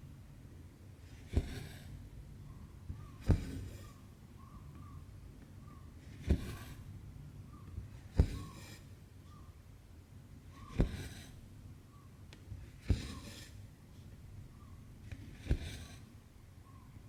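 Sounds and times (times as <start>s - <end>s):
thread rasping through fabric: 1.0s - 4.1s, 6.0s - 9.6s, 10.4s - 16.8s
needle popping through cloth: 1.1s - 2.0s, 3.0s - 4.0s, 6.0s - 6.9s, 7.8s - 8.9s, 10.5s - 11.6s, 12.4s - 13.6s, 15.0s - 16.1s.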